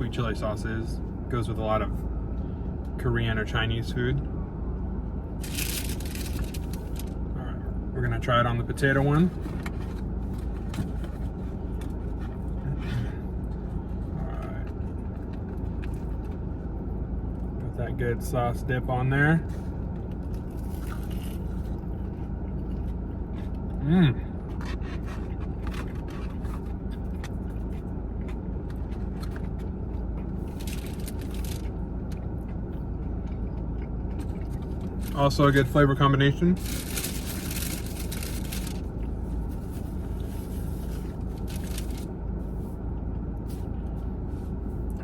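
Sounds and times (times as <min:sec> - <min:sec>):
steady low hum: 0:00.0 - 0:45.0
vehicle idling rumble: 0:00.0 - 0:45.0
crunching and chewing: 0:05.4 - 0:07.3, 0:09.1 - 0:17.6, 0:19.4 - 0:35.8, 0:36.6 - 0:45.0
faint clicks and rustles: 0:24.5 - 0:33.4, 0:36.6 - 0:42.7.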